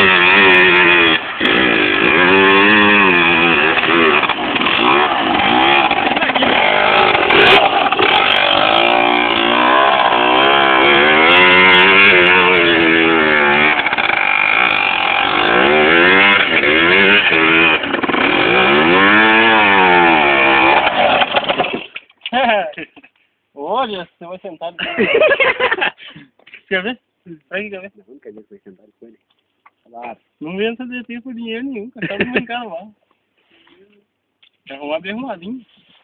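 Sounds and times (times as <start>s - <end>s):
two-stroke motorcycle engine revving: 0.0s - 21.9s.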